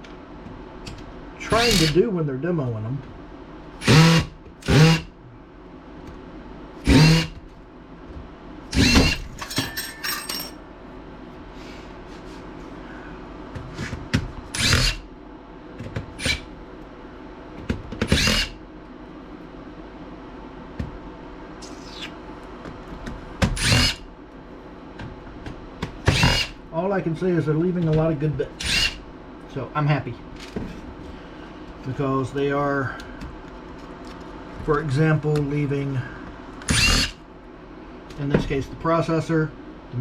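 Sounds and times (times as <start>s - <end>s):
electric screwdriver bursts: 1.6s - 2.0s, 3.8s - 5.1s, 6.8s - 7.4s, 8.7s - 9.2s, 14.5s - 15.0s, 18.0s - 18.6s, 23.6s - 24.0s, 26.1s - 26.6s, 28.6s - 29.0s, 36.7s - 37.2s.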